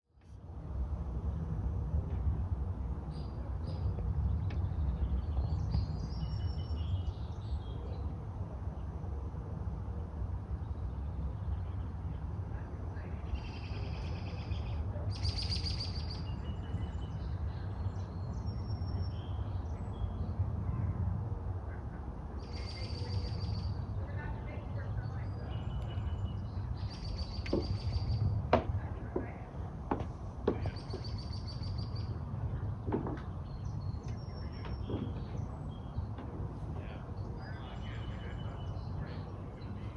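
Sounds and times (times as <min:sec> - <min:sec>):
low outdoor rumble: 0:00.1 - 0:39.9
birds chirping and trilling: 0:25.0 - 0:28.4.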